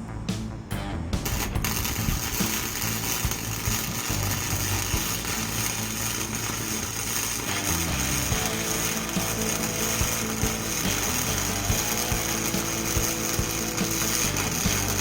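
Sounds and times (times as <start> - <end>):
background music: 0.0 - 15.0
power tool running with hiss: 1.3 - 15.0.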